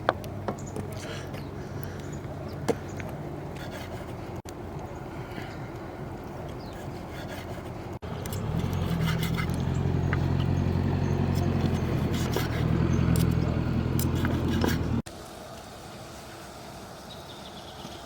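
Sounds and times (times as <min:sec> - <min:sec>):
light clicks and scrapes: 0:05.4 - 0:10.6, 0:11.3 - 0:15.0
engine idling: 0:08.0 - 0:15.0.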